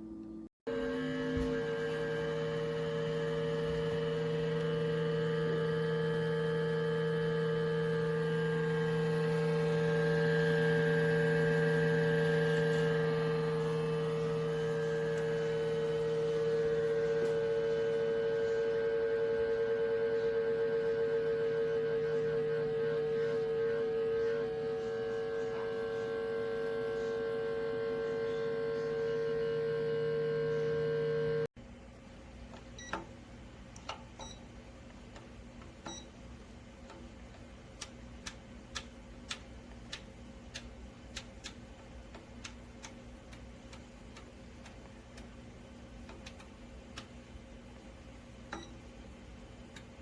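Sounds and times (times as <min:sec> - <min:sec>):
steady held tone: 0:00.0 - 0:31.5.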